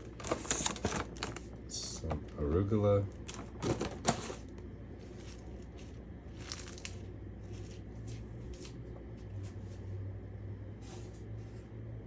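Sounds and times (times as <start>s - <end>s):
salad greens rustling: 3.2s - 8.8s.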